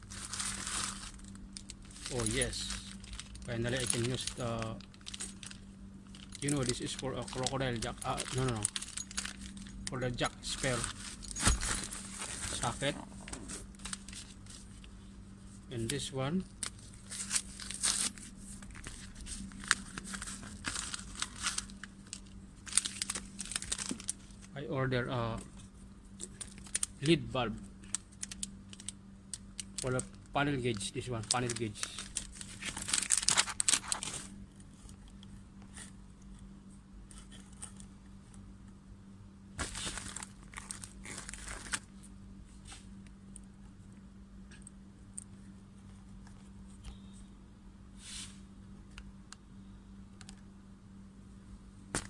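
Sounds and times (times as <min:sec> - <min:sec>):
plastic packaging crinkling and tearing: 0:00.0 - 0:14.9, 0:15.8 - 0:24.6, 0:26.1 - 0:35.0, 0:39.6 - 0:42.1
faint steady hum: 0:00.0 - 0:52.0.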